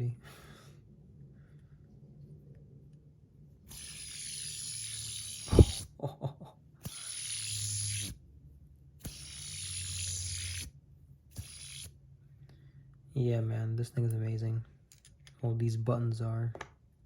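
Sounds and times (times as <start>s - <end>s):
fidget spinner whirring: 3.7s - 5.9s, 6.8s - 8.2s, 9.0s - 10.7s, 11.3s - 12.0s.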